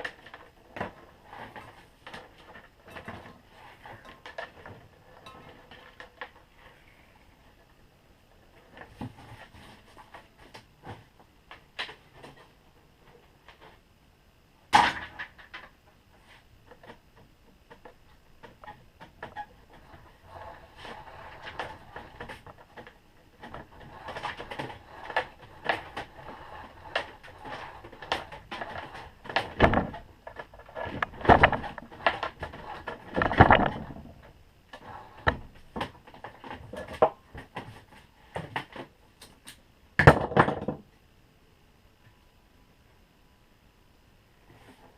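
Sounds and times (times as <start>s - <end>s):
cord scraping and rustling: 0.0s - 13.8s, 17.6s - 38.9s.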